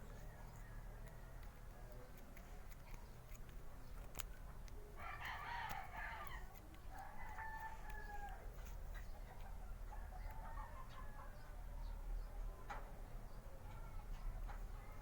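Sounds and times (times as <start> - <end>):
rooster crowing: 5.0 - 6.4, 7.0 - 8.4.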